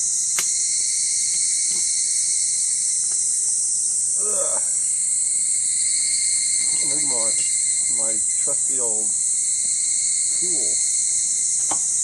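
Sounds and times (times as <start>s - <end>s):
insects shrilling: 0.0s - 12.0s
person grunting: 4.2s - 4.8s.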